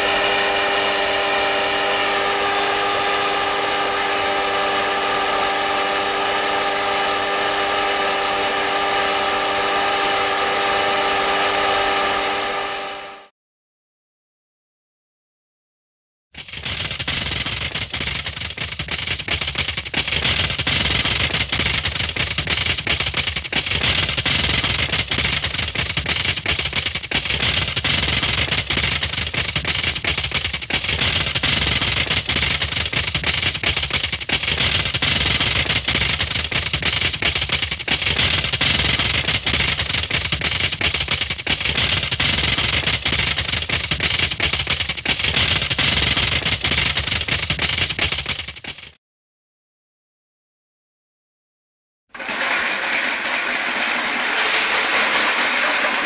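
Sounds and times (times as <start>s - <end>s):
rapid sharp cracks: 16.4s - 48.9s, 52.2s - 56.0s.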